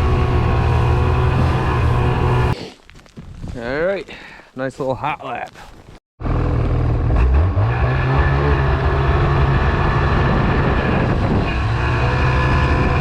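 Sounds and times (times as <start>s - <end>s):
snowmobile engine under throttle: 0.0s - 2.6s, 6.2s - 13.0s.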